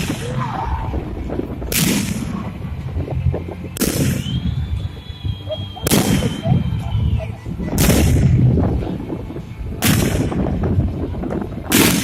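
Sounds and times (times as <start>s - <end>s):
low rumble: 0.0s - 12.0s
fireworks bangs: 3.8s - 5.2s, 5.8s - 6.8s, 7.7s - 8.6s, 9.8s - 10.7s
high whistle: 4.0s - 7.4s.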